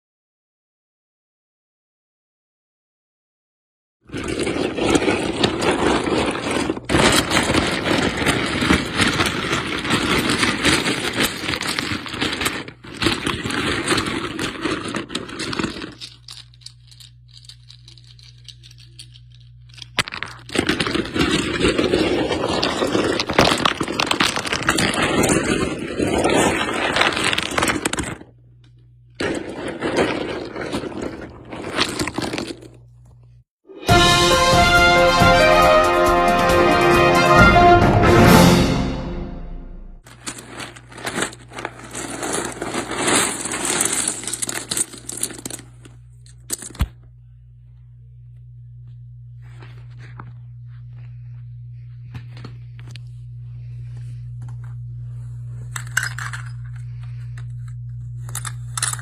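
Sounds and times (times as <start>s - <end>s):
dense crackling and scraping: 4.0s - 33.4s, 40.0s - 47.0s, 49.4s - 59.0s
low steady hum: 4.2s - 33.4s, 39.7s - 59.0s.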